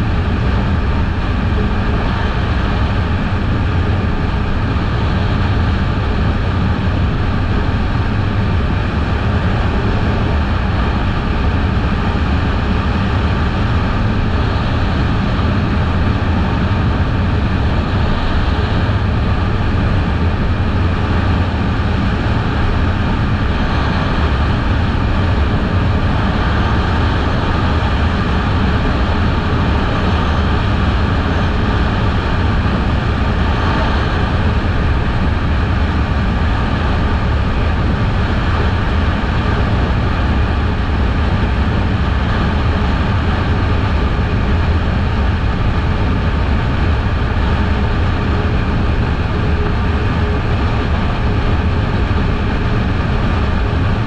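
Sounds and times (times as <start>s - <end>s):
wind rush on microphone: 0.0s - 54.0s.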